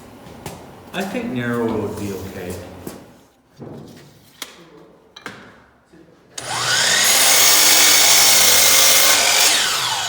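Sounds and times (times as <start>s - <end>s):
electric power saw whining: 6.4s - 10.0s.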